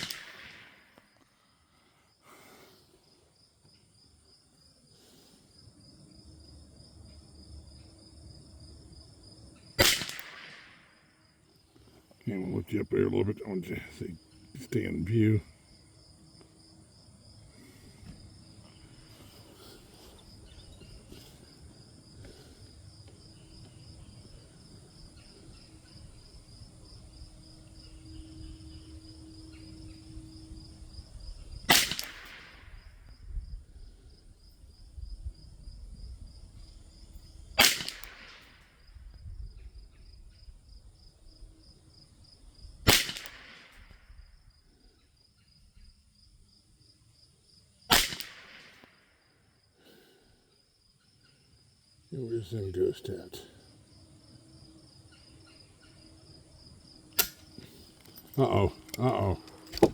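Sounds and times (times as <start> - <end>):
rifle shots: 0.0 - 0.8, 9.8 - 10.8, 31.7 - 32.6, 37.6 - 38.5, 42.9 - 43.9, 47.9 - 48.8
crickets chirping: 0.0 - 59.9.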